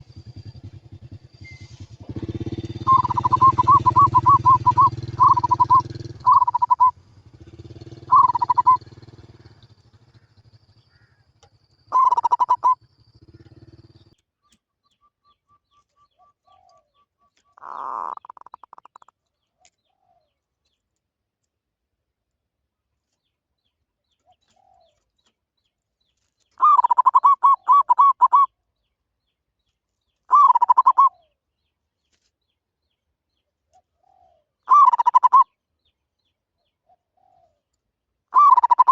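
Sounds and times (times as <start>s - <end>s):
dove cooing: 2.1s - 7.0s, 7.9s - 9.0s, 11.9s - 14.0s, 16.1s - 17.0s, 17.6s - 19.1s, 24.3s - 25.0s, 26.6s - 28.5s, 30.3s - 31.3s, 33.8s - 35.5s, 36.8s - 37.7s, 38.3s - 38.9s.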